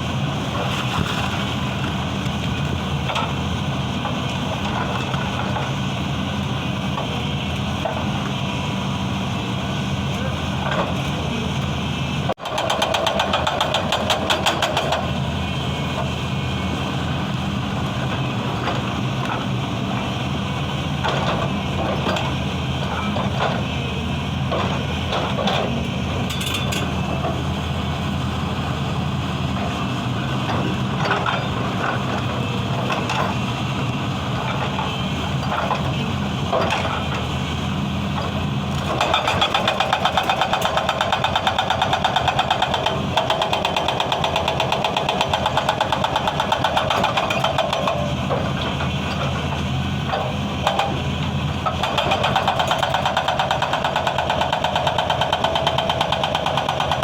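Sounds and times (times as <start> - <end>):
diesel engine running: 0.0 - 57.0
hydraulic breaker hammering: 12.4 - 15.1, 38.3 - 48.4, 50.1 - 57.0.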